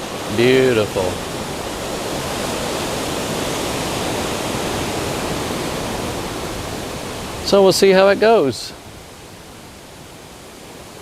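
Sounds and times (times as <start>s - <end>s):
ocean surf rushing: 0.0s - 11.0s.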